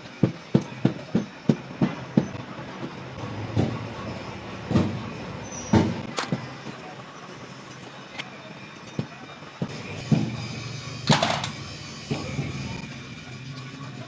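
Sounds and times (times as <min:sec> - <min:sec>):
heavy thumps: 0:04.6 - 0:05.1.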